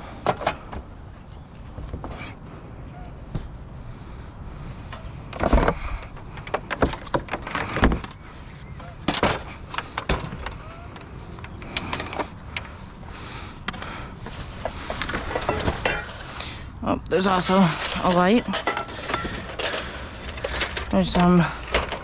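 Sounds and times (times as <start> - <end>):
scrap items knocking and clattering: 3.3 - 3.6, 4.6 - 8.0.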